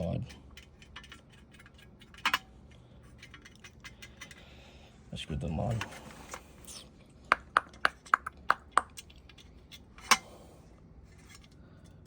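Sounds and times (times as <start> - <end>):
small metal parts clicking: 0.2 - 4.5.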